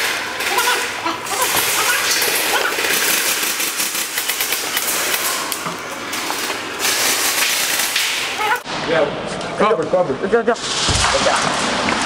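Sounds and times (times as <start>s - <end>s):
airsoft guns firing in bursts: 0.4s - 5.1s.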